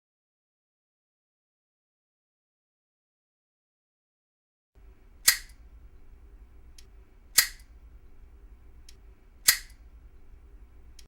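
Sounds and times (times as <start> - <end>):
steady low hum: 4.8 - 11.0.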